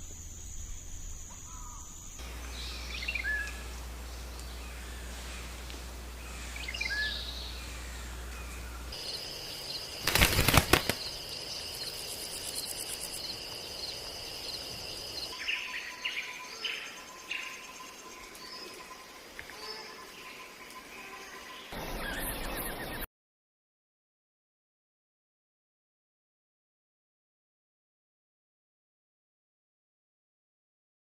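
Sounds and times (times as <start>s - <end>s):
bird chirps: 0.5s - 5.5s, 6.3s - 23.1s
loud burst like wings flapping: 9.7s - 11.6s.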